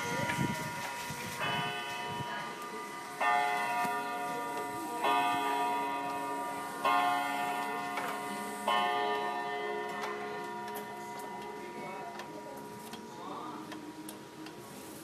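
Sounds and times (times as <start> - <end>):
clock striking: 1.4 - 13.1.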